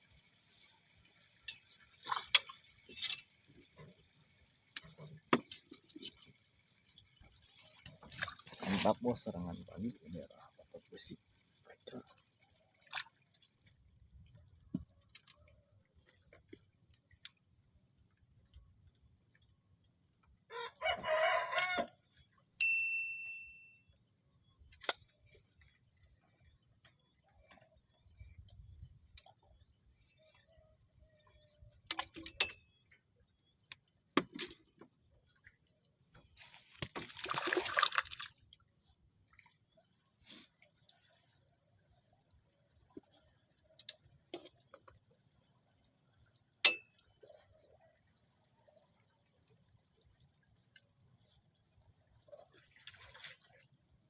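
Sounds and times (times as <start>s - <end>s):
rooster crowing: 20.5s - 22.0s
sharp ringing ping: 22.6s - 23.9s.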